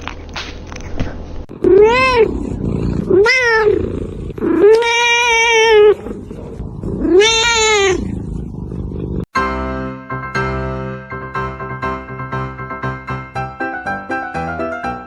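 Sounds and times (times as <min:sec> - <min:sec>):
cat meowing: 0:01.6 - 0:02.4, 0:03.1 - 0:06.0, 0:07.0 - 0:08.1.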